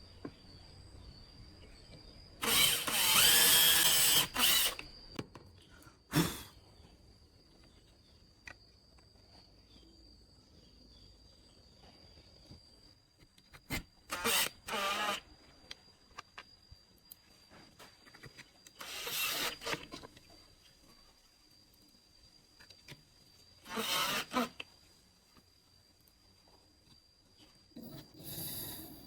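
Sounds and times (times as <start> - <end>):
power tool running: 2.4 - 4.8, 14.1 - 15.2, 18.8 - 19.8, 23.7 - 24.5.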